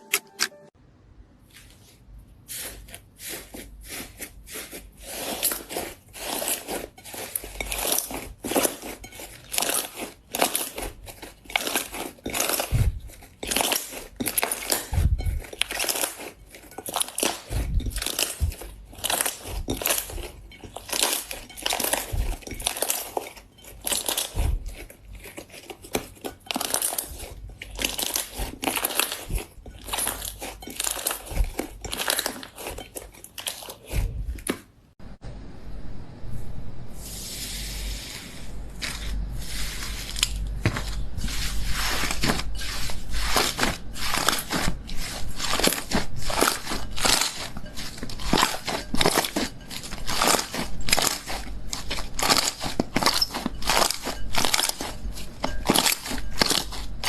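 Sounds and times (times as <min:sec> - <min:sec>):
slime crackling and popping: 0:09.4 - 0:24.5, 0:25.6 - 0:32.7, 0:48.2 - 0:57.0.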